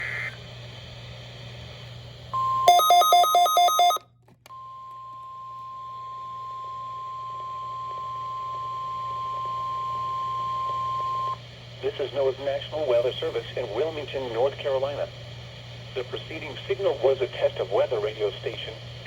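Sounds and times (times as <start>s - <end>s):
high steady alarm tone: 2.4s - 4.0s
rapid alternating electronic beeps: 2.7s - 4.0s.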